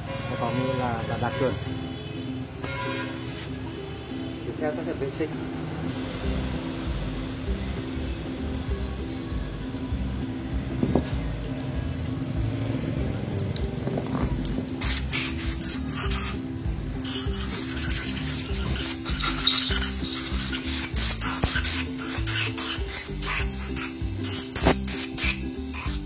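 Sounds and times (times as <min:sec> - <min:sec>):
background music: 0:00.0 - 0:26.0
rubbing and scraping on metal: 0:17.0 - 0:23.9.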